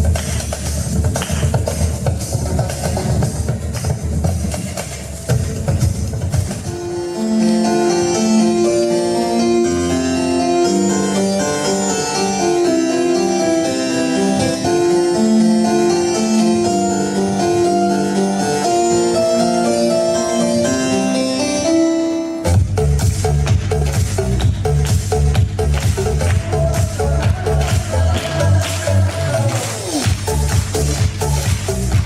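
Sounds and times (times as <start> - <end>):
keyboard melody of held notes: 5.3 - 23.2.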